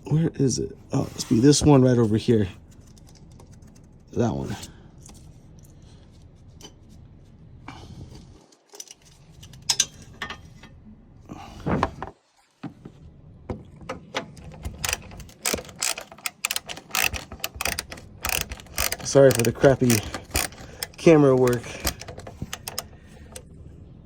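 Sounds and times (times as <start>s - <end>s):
ratchet wrench clicking: 14.4s - 23.4s.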